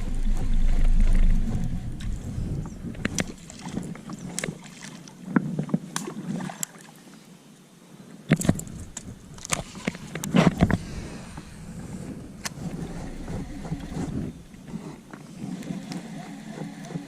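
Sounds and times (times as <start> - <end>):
gear knocking in plastic kayak: 0.0 - 4.6, 9.6 - 17.0
wind rumble on microphone: 0.0 - 4.6, 8.4 - 15.9.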